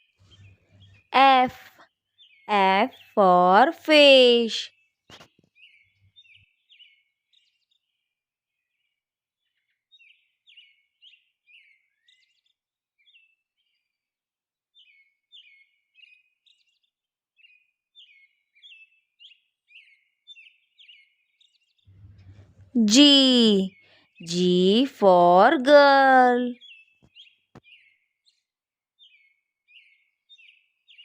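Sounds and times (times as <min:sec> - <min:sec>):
faint bird chirping: 0:00.0 - 0:03.2, 0:18.0 - 0:28.4.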